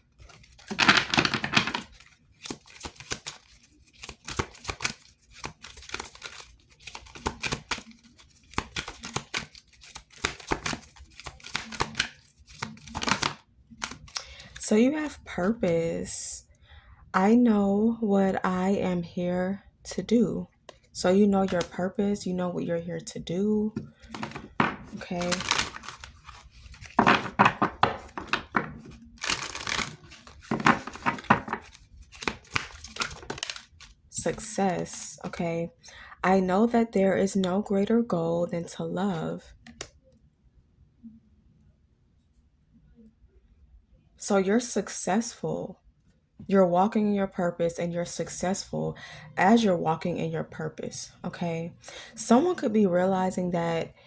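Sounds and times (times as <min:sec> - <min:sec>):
cards being shuffled: 0:00.2 - 0:15.6, 0:21.4 - 0:21.7, 0:23.8 - 0:35.4.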